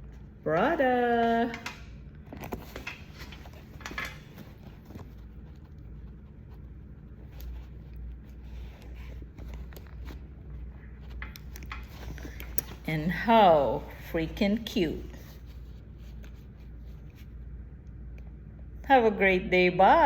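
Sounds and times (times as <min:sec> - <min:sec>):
steady low hum: 0:00.0 - 0:20.0
light clicks and rustles: 0:01.2 - 0:13.0.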